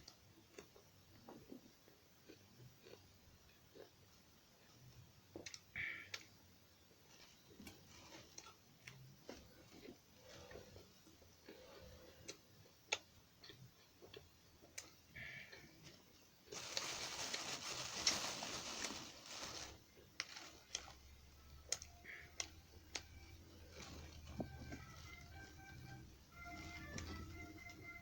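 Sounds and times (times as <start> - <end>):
noisy chewing: 0.5 - 6.3, 7.4 - 15.0.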